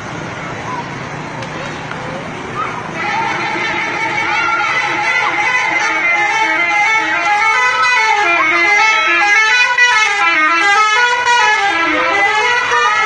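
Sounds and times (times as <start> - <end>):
multi-tone musical horn: 3.0 - 13.0.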